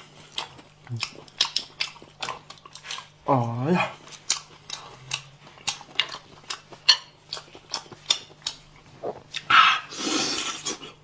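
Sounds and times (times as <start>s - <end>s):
loud sucking slurp: 9.8s - 10.9s.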